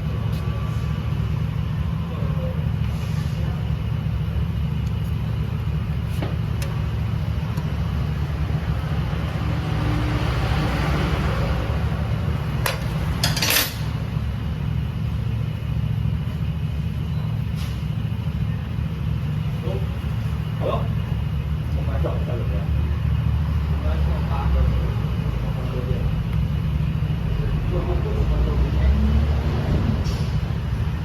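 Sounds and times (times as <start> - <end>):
scooter engine idling: 0.0 - 9.3, 11.7 - 24.0.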